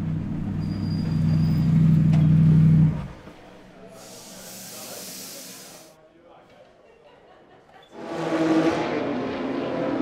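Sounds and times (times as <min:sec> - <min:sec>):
hiss of air: 0:04.0 - 0:06.0.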